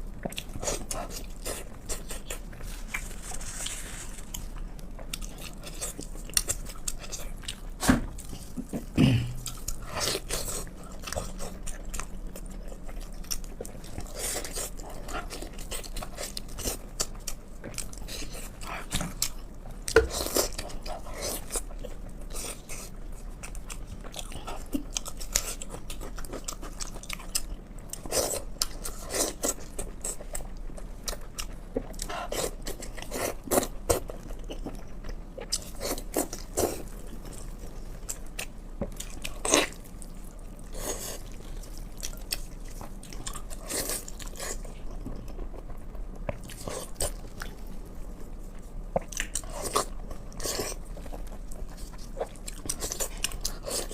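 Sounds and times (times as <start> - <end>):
person chewing and biting: 9.3 - 45.6, 48.9 - 53.9.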